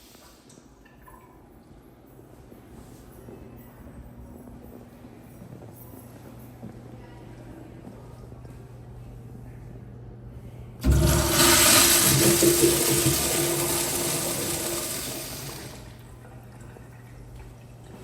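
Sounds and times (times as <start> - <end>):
toilet flushing: 10.8 - 18.0.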